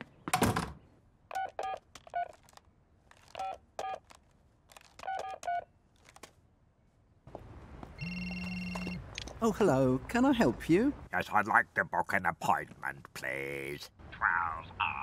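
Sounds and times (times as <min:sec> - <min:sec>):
telephone keypad beeps: 0:08.0 - 0:09.0.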